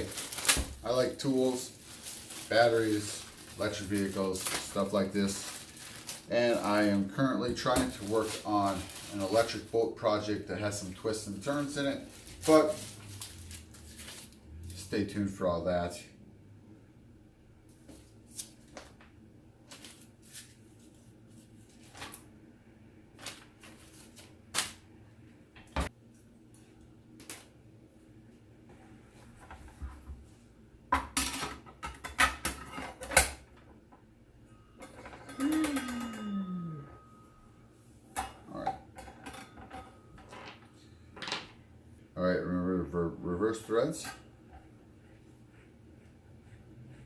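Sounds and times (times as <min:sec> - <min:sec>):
metallic ringing: 0:34.5 - 0:37.7
falling pitch tone: 0:35.2 - 0:37.4.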